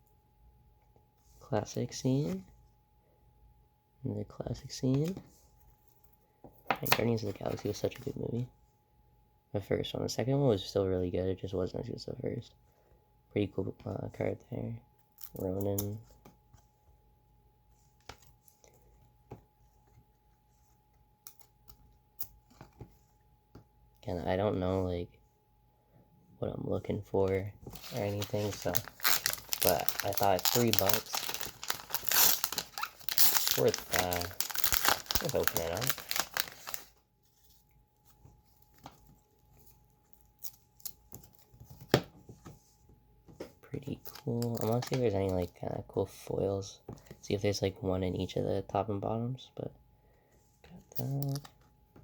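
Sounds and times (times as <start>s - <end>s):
trading cards clicking and rustling: 27.7s - 36.9s
plastic wrapper crinkling: 27.7s - 37.0s.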